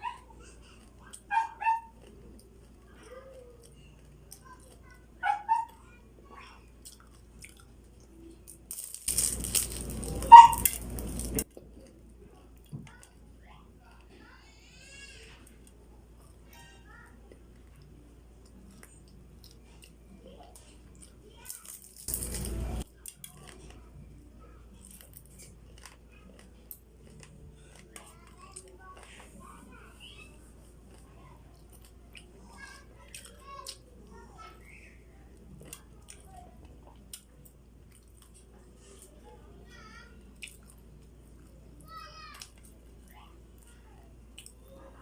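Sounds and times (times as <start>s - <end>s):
chewing crackles: 0.0s - 14.1s, 15.4s - 39.2s, 40.2s - 45.0s
crunching of fried wrapper: 6.8s - 12.0s, 18.5s - 23.8s, 24.7s - 29.3s
crunchy bite into fried wrapper: 8.7s - 11.5s, 21.4s - 23.8s.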